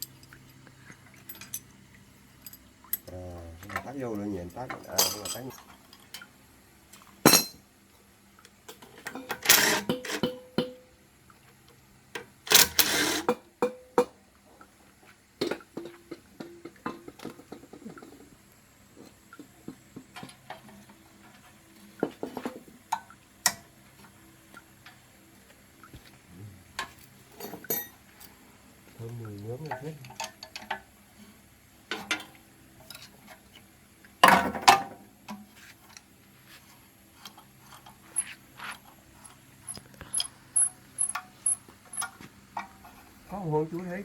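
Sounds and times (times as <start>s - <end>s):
metal tools clinking and clattering: 4.8s - 5.7s, 27.4s - 28.0s.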